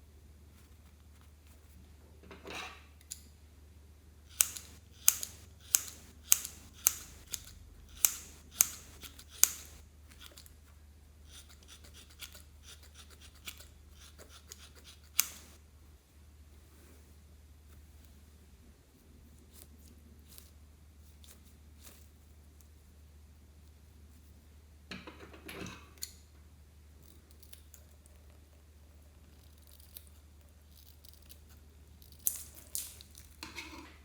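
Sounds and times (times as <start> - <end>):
scissors snipping: 4.3 - 10.5, 11.3 - 15.6
soft crackling and scraping: 15.2 - 24.5, 27.0 - 34.0.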